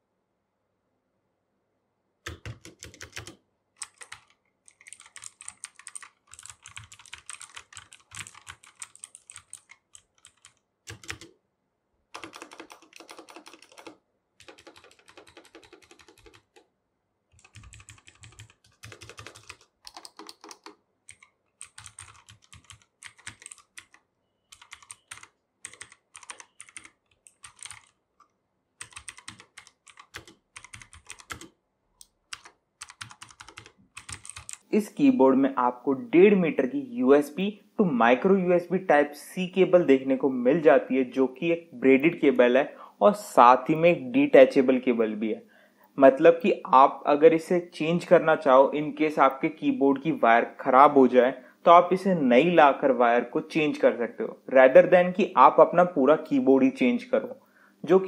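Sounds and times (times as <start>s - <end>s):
clicky mechanical keyboard typing: 2.2s - 11.3s, 12.1s - 16.7s, 17.3s - 34.7s.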